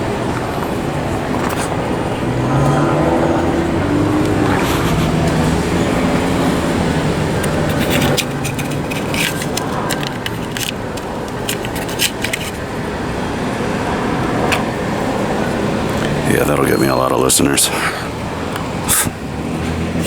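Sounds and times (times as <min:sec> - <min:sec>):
street traffic: 0:00.0 - 0:20.0
vehicle low hum: 0:00.0 - 0:20.0
sharp clicks and scrapes: 0:07.4 - 0:12.7.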